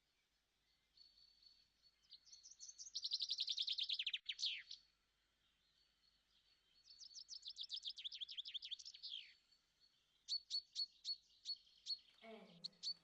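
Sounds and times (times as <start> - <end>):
songbird trilling: 10.3 - 13.0.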